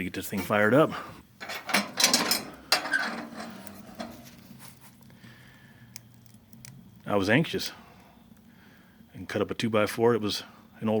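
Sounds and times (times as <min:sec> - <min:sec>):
metal clattering and clanking: 0:01.4 - 0:04.4.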